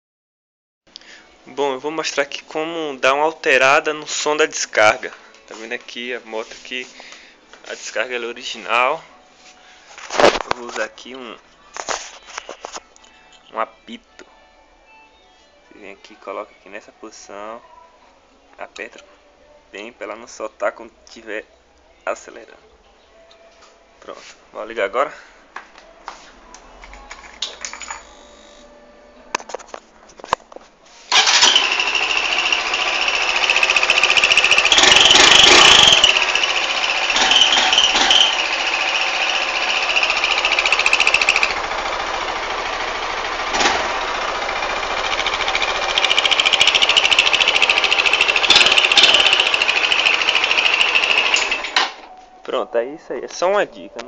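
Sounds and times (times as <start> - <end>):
motorcycle engine revving: 31.1 - 51.8
high exhaust whistle: 33.4 - 41.8.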